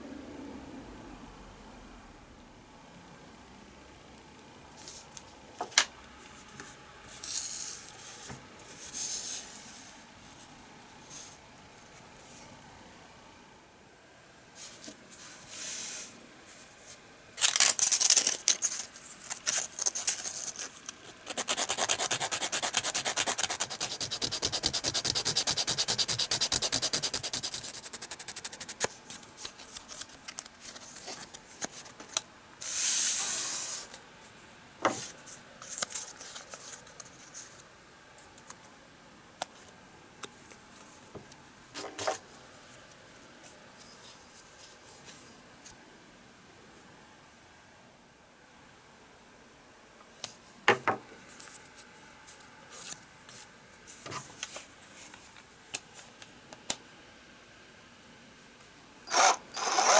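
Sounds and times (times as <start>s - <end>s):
sandpaper rubbing on wood: 21.3s - 28.8s.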